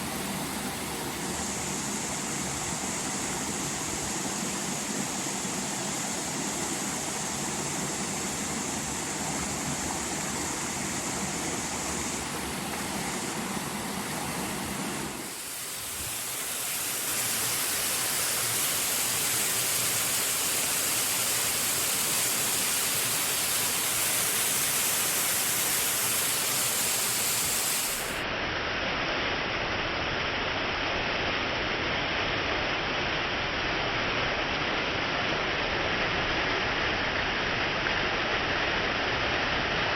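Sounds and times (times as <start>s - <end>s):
waterfall rushing onto rock: 0.0s - 28.3s.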